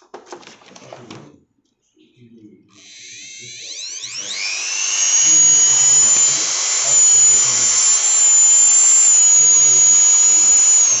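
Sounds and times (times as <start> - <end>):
rotary tool motor whine: 2.8 - 11.0.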